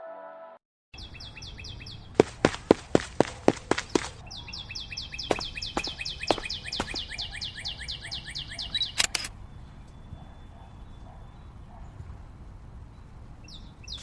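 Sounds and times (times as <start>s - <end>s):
bird chirps trilling: 1.0s - 2.2s, 3.6s - 9.0s
sharp clicks: 8.8s - 9.3s.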